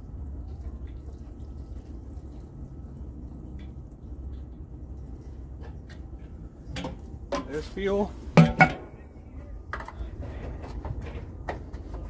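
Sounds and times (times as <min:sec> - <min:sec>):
liquid trickling into tank: 0:00.0 - 0:05.6.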